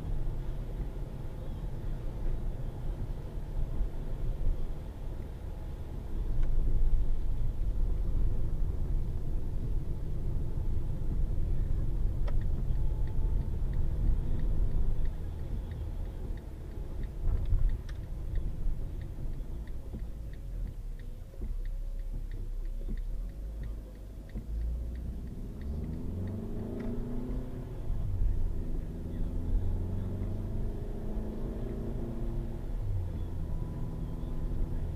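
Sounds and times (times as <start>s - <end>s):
road and engine rumble: 0.0s - 34.9s
light ticking: 8.9s - 29.6s.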